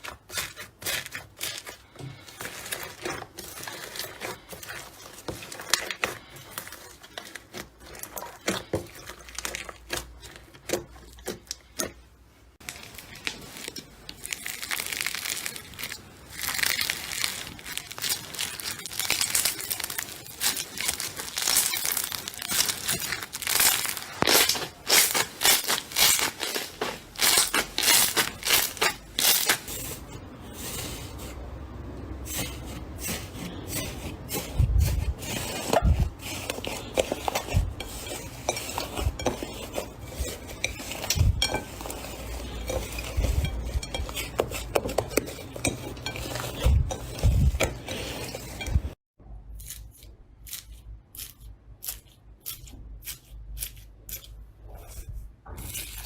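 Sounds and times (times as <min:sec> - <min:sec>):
slime squishing: 0:00.0 - 0:49.0
slime clicking and crackling: 0:12.6 - 0:30.0.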